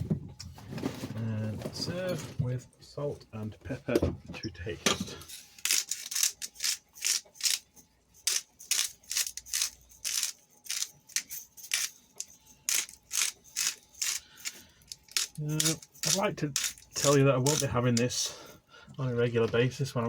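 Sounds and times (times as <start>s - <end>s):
pepper mill grinding crunches: 5.6s - 18.0s.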